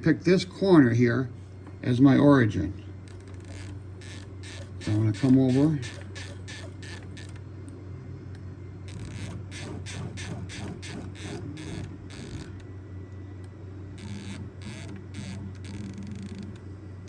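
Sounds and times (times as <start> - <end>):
steady low hum: 0.0 - 17.0
stepper motor short moves: 3.4 - 7.4, 8.9 - 12.6, 14.0 - 16.6.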